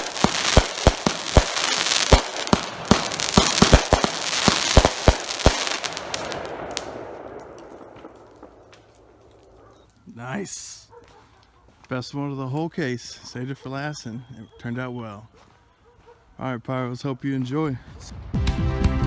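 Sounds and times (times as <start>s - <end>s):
firework crackling: 0.0s - 9.6s
firework shots and bursts: 0.0s - 9.6s.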